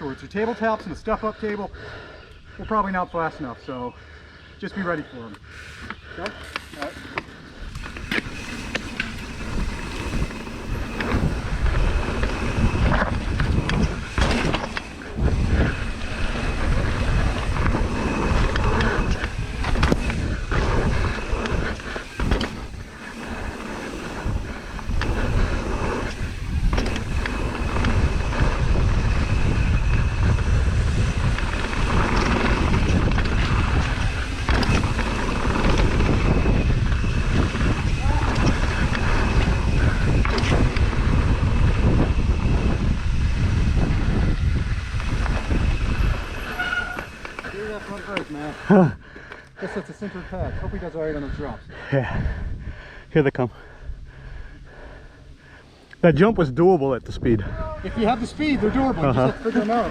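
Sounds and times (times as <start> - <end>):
tyres rumbling on dirt: 4.7 - 49.0, 56.1 - 59.9
wind buffeting microphone: 4.8 - 59.9
bike knocking and rattling: 5.6 - 49.5, 57.6 - 59.9.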